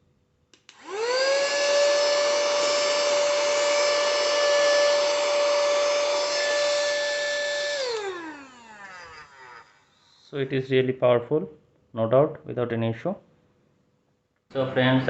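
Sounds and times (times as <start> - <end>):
mini vacuum cleaner motor whine: 0.7 - 10.4.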